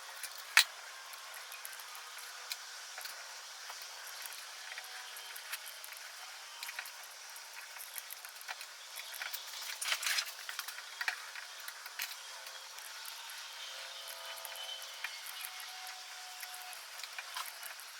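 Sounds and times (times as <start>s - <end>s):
small metal clicks: 0.2s - 17.9s.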